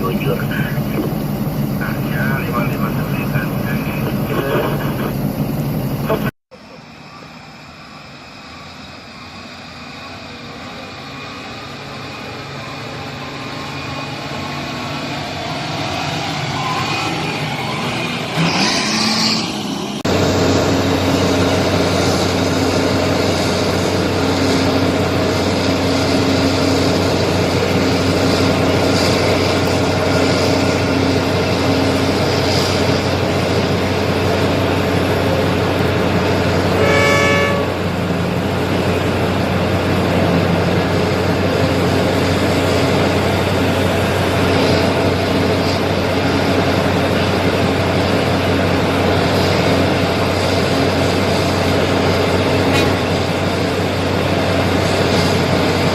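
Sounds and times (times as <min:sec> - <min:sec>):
large diesel engines droning: 0:00.0 - 0:55.9
horn blast: 0:36.6 - 0:38.0.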